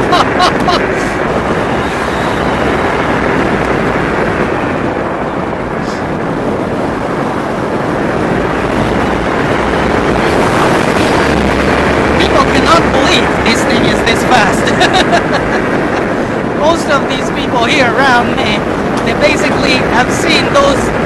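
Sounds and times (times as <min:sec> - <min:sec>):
wind rushing over microphone: 0:00.0 - 0:21.0.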